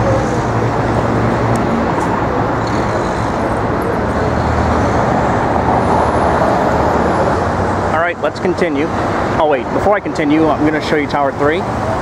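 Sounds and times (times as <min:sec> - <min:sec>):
city road traffic: 0:00.0 - 0:12.0.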